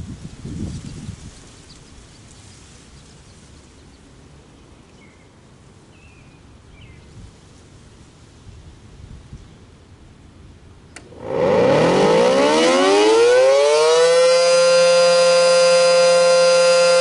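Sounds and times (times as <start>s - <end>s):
wind buffeting microphone: 0.0s - 2.4s
steady faint hiss: 0.0s - 11.2s.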